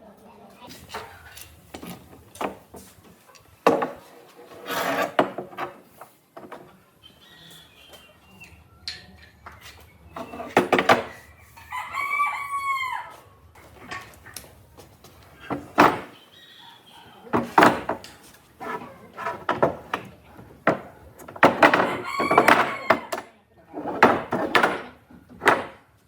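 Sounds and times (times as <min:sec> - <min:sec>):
knocks and clatter: 0:03.6 - 0:06.8, 0:10.2 - 0:11.1, 0:13.6 - 0:16.2, 0:17.3 - 0:25.9
rooster crowing: 0:11.4 - 0:13.3, 0:21.8 - 0:23.1.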